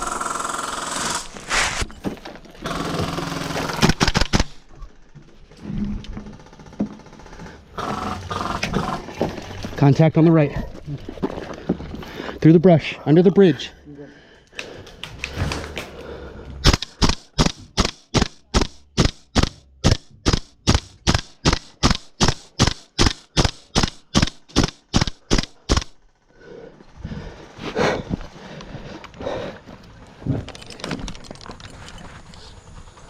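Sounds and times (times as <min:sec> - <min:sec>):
airsoft gun shots: 0:16.6 - 0:26.0.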